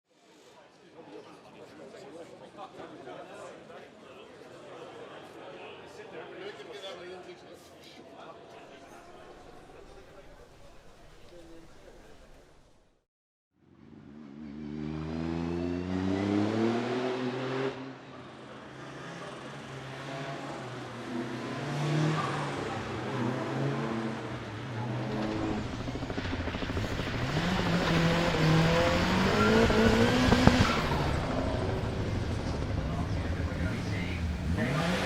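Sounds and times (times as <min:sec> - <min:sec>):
car engine accelerating: 0:19.0 - 0:35.0.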